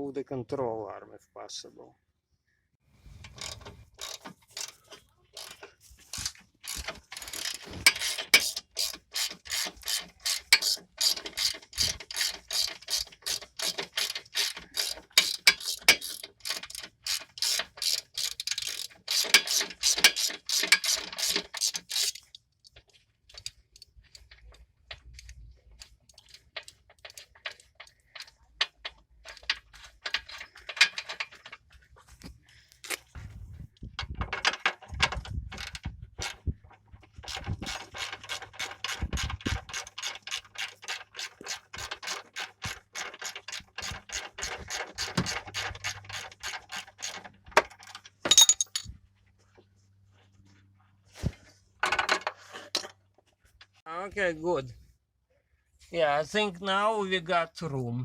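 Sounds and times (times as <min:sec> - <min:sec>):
socket ratchet clicking: 0:06.7 - 0:22.3.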